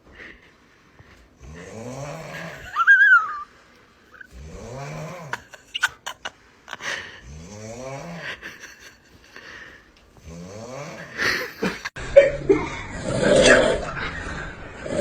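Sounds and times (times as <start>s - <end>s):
person snoring: 1.4s - 3.4s, 4.2s - 8.6s, 10.2s - 15.0s.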